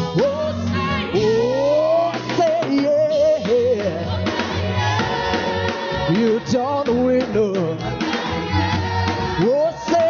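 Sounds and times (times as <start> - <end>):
person singing: 0.0 - 4.4, 6.0 - 8.7, 9.3 - 10.0
band accompaniment: 0.0 - 10.0.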